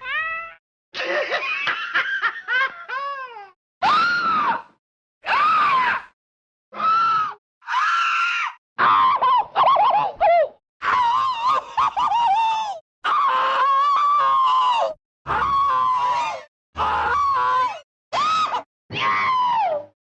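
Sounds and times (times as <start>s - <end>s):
cartoon cat screaming: 6.8s - 10.0s, 10.8s - 19.9s.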